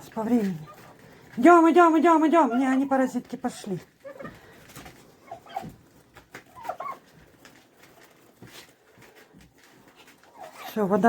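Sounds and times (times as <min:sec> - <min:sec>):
turkeys calling: 0:03.6 - 0:07.4.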